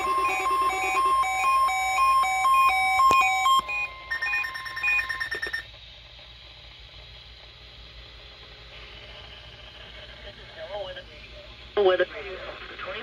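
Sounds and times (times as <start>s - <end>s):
two-pitch electronic beeping alarm: 0.0s - 5.7s.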